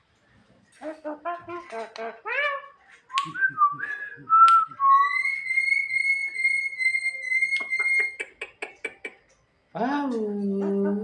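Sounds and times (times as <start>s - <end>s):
bird whistling: 3.2s - 8.2s.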